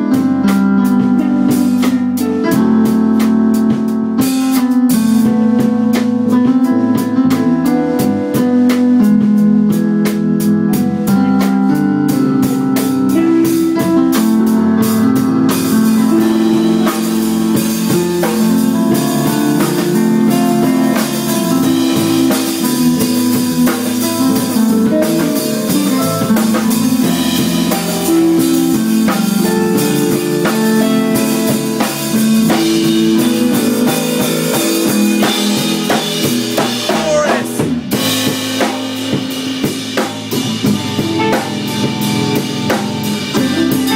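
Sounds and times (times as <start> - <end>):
drum kit beat: 0.0 - 43.9
held keyboard notes: 0.0 - 43.9.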